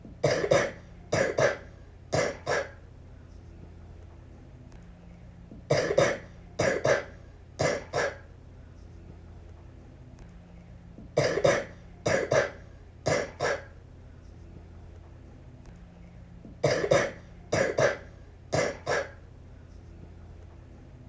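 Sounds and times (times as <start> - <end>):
little girl coughing: 0.2 - 2.8, 5.7 - 8.2, 11.2 - 13.8, 16.6 - 19.2.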